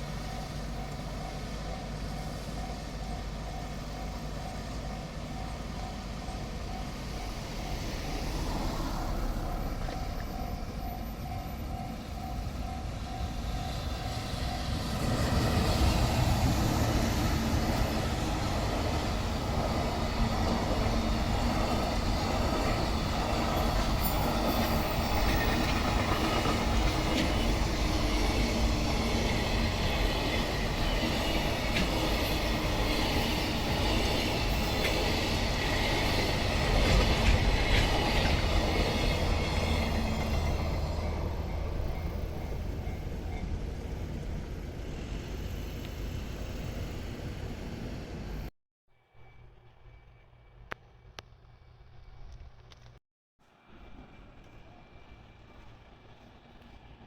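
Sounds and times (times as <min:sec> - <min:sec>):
train wheels on rails: 0:00.0 - 0:48.5, 0:49.2 - 0:57.0.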